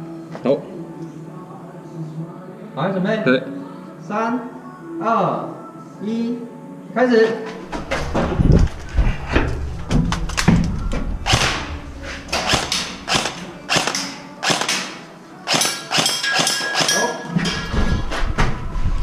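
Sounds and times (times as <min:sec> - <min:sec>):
airsoft rifle shots: 0:11.2 - 0:17.2
pellets striking targets: 0:11.2 - 0:17.4.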